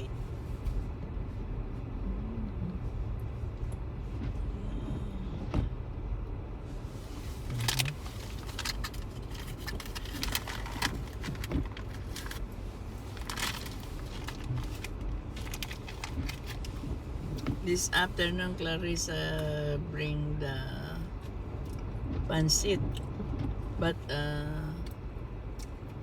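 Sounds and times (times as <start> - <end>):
road and engine rumble: 0.0 - 26.0.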